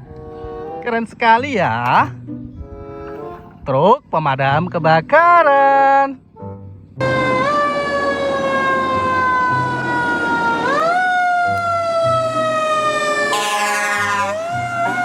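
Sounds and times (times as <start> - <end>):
toy electronic siren wailing: 7.0 - 15.0.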